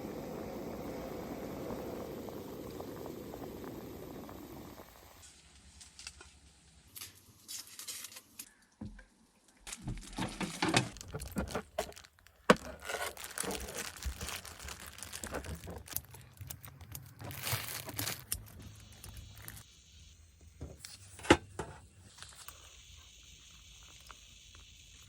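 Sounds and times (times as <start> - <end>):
packaging crinkling and tearing: 9.7 - 19.6.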